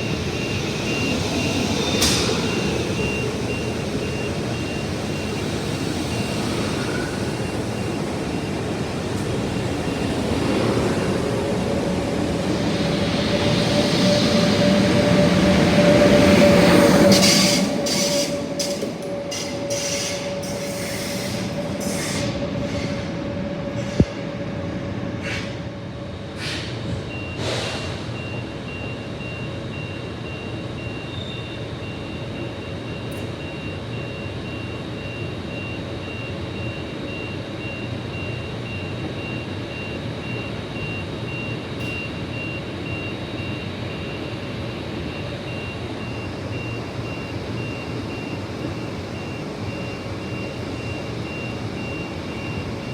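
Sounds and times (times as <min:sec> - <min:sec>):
train wheel squeal: 0:00.0 - 0:08.7, 0:12.3 - 0:24.4, 0:26.4 - 0:28.4, 0:30.8 - 0:32.3
low train rumble: 0:00.0 - 0:33.0.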